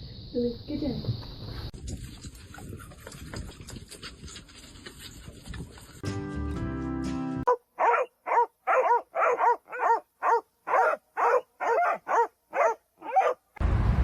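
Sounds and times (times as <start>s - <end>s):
small dog barking: 7.5s - 13.4s.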